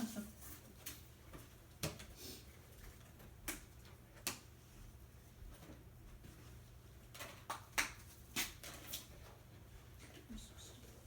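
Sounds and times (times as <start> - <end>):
faint low hum: 8.1 - 11.0.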